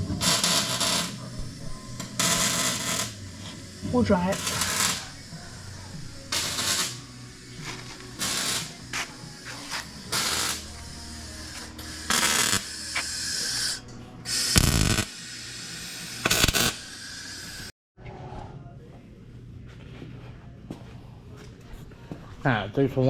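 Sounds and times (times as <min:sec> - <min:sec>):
welder crackling bursts: 0:00.0 - 0:01.3, 0:02.0 - 0:05.3, 0:06.2 - 0:17.7.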